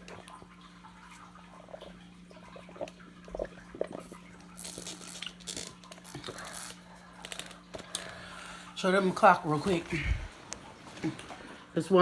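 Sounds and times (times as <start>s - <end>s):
steady low hum: 0.0s - 12.0s
short gulps: 1.5s - 8.8s, 9.6s - 11.7s
sucking and swallowing through straws: 1.6s - 8.1s.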